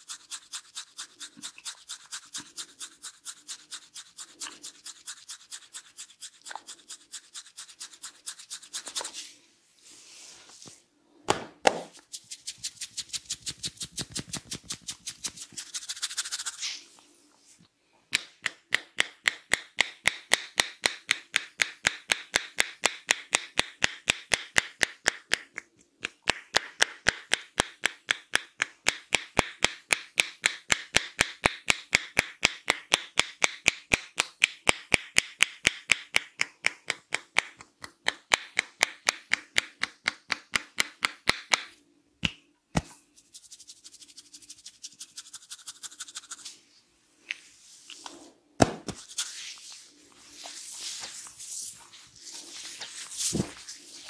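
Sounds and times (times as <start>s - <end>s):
hands rubbing through hair: 0.1s - 10.8s, 11.9s - 17.6s, 42.8s - 48.2s, 48.9s - 54.0s
hands slapping head: 13.6s - 15.5s, 18.1s - 43.0s, 48.6s - 49.2s.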